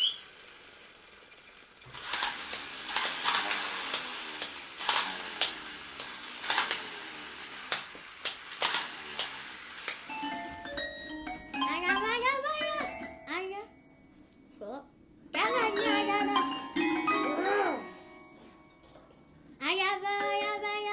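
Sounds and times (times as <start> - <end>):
crackling sizzling hiss: 0.0 - 10.8.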